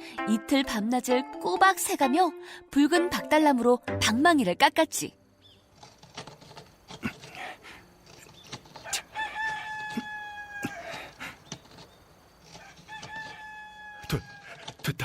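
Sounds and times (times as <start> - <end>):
knife carving wood: 5.6 - 10.1, 10.7 - 13.5, 14.2 - 15.0
rooster crowing: 8.8 - 11.3, 12.5 - 14.8.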